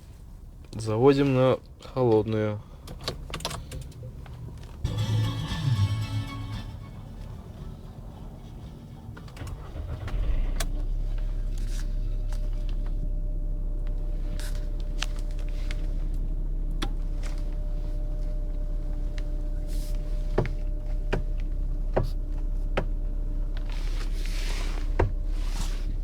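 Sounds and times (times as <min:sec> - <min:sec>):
car engine idling: 0:04.2 - 0:26.0.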